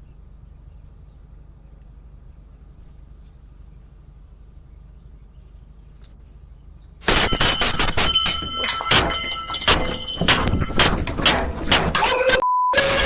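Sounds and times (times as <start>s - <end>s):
pounding on door: 8.3s - 12.0s
censor bleep: 12.4s - 13.0s.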